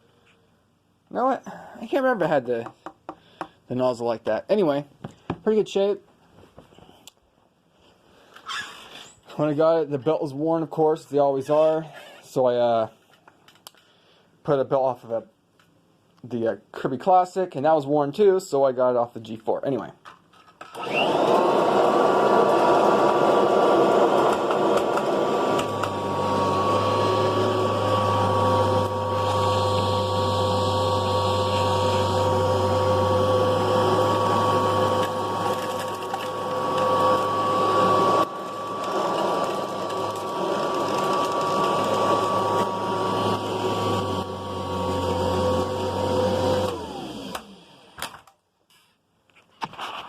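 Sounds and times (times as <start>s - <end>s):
low hum of vacuuming debris: 20.8s - 48.0s
vacuum cleaner motor whine: 20.8s - 48.0s.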